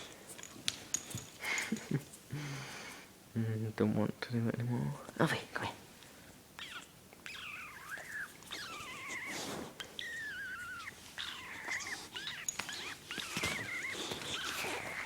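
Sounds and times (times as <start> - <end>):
person making squeaky whining noises: 6.6 - 15.0.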